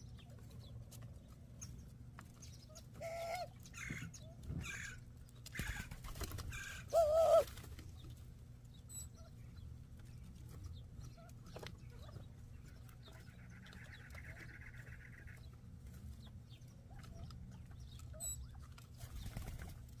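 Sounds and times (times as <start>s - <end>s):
low steady hum: 0.0s - 20.0s
soft bird calls: 0.0s - 20.0s
dove call: 3.0s - 7.7s.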